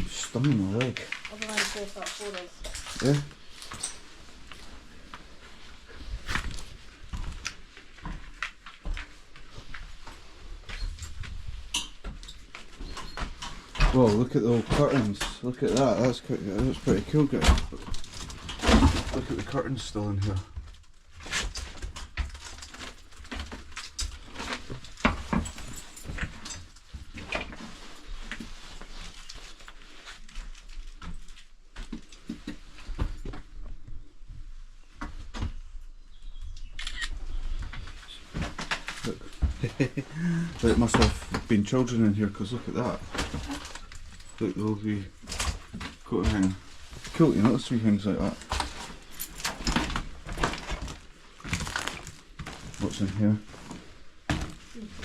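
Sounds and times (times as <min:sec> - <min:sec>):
footsteps crunching over debris: 0:00.0 - 0:10.9, 0:50.0 - 0:54.7.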